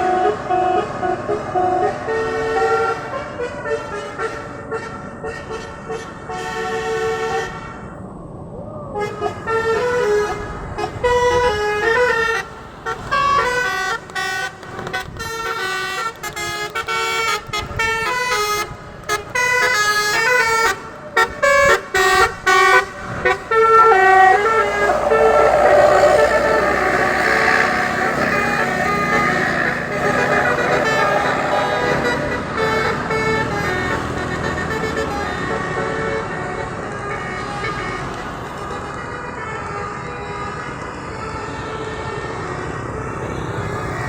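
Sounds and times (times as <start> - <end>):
musical air horn melody: 21.4 - 35.1.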